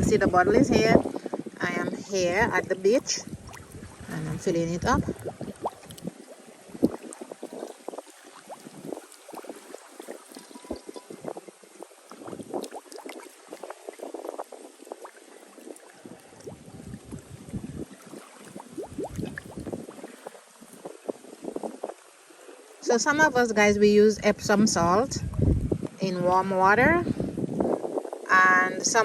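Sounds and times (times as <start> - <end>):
water glugging into a bottle: 0.0 - 22.0.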